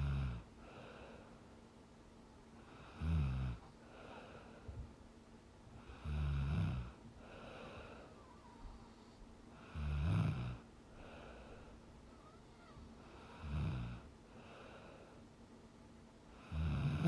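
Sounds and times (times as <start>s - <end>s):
woman snoring: 0.0s - 0.4s, 2.9s - 3.6s, 5.9s - 7.0s, 9.7s - 11.2s, 12.2s - 14.1s, 16.4s - 17.0s
soft breathing: 0.6s - 1.6s, 2.5s - 5.0s, 7.1s - 15.4s.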